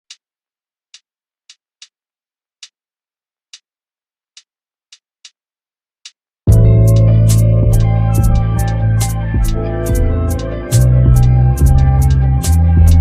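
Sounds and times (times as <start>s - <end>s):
music with deep bass and plucked strings: 6.5s - 13.0s.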